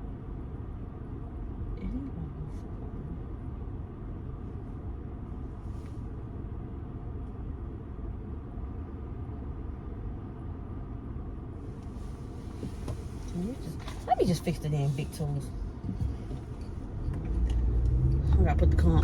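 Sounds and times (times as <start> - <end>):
car air conditioning blowing: 0.0 - 16.9
car rumble: 0.0 - 19.0.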